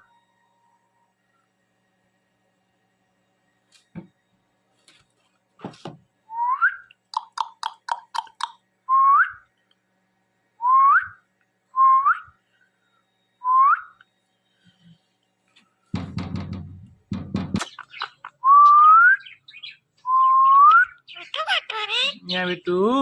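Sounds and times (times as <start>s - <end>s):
short knocks: 16.0s - 17.8s.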